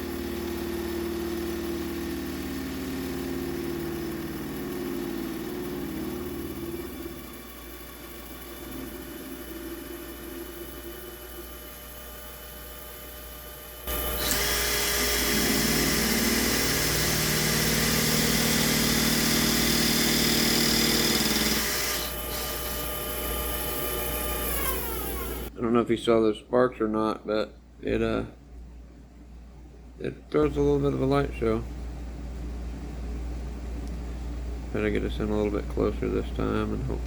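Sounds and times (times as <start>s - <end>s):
lathe motor whining: 0.0s - 25.5s.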